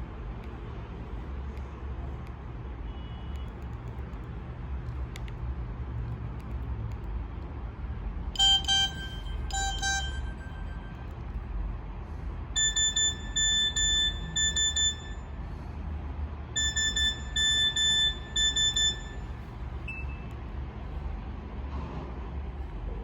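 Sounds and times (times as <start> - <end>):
beeping phone ringtone: 8.4 - 11.1, 12.6 - 15.3, 16.6 - 20.2.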